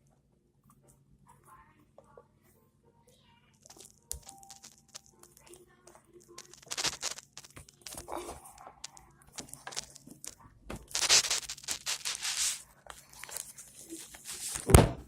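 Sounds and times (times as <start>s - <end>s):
plastic bag crinkling: 3.7s - 14.7s.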